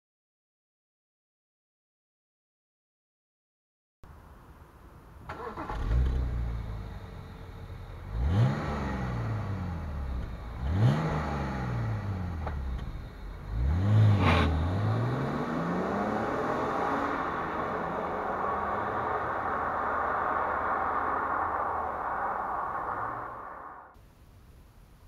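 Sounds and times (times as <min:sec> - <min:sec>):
car engine starting and revving: 0:05.2 - 0:24.0.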